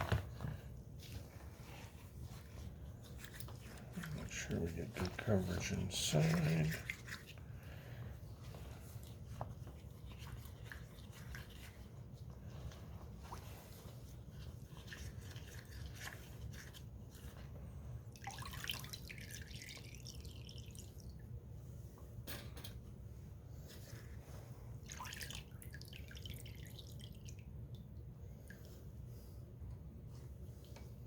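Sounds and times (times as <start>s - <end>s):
low steady hum: 0.0s - 31.0s
liquid splashing and dripping: 18.1s - 21.3s, 24.8s - 28.8s.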